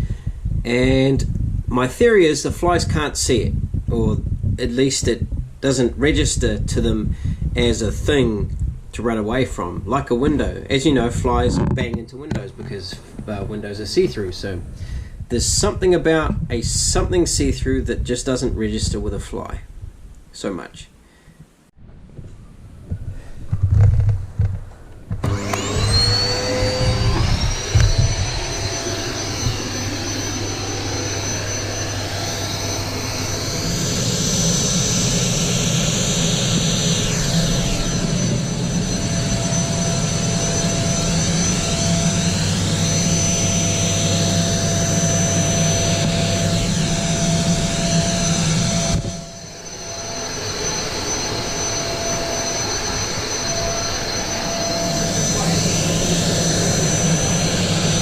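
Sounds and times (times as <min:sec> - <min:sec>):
vacuum cleaner whining: 0:25.1 - 0:58.0.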